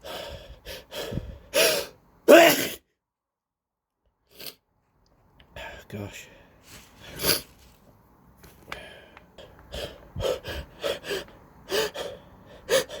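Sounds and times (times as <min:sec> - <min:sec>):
wheezy gasping breaths: 0:00.0 - 0:02.0, 0:08.6 - 0:13.0
person sneezing: 0:01.6 - 0:02.8.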